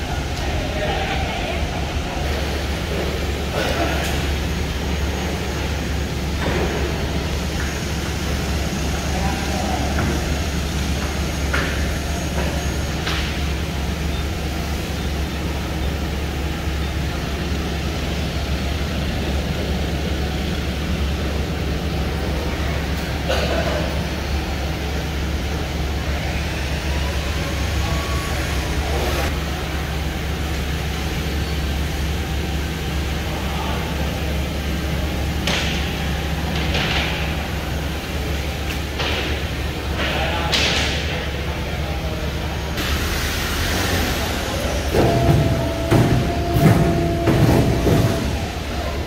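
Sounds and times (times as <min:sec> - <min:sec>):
machine whine: 0:42.6 - 0:49.0
saw machine humming: 0:42.8 - 0:49.0.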